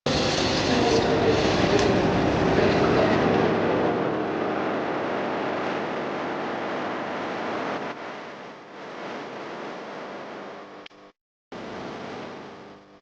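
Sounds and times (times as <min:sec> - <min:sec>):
moving train rumbling: 0:00.1 - 0:07.4.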